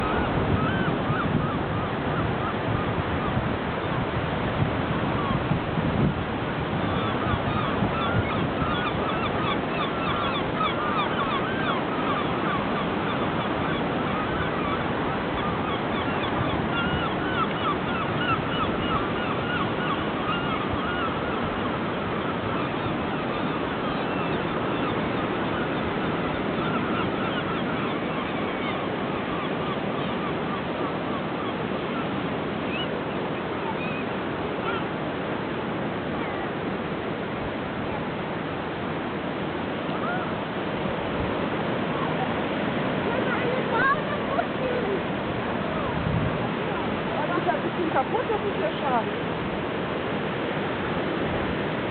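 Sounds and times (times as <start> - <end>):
gulls calling: 0.0 - 4.3, 4.9 - 51.9.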